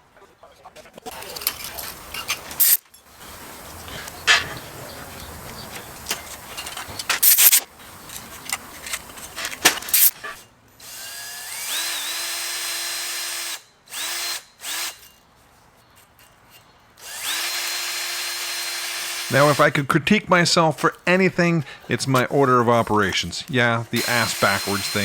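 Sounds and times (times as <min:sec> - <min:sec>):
parts knocking and clattering: 0:03.7 - 0:10.4
power tool motor running: 0:09.9 - 0:15.1, 0:17.0 - 0:19.7, 0:24.0 - 0:25.0.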